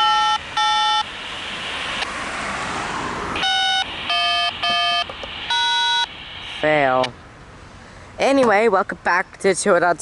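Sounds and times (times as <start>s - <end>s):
electronic tone blasts: 3.4s - 6.7s.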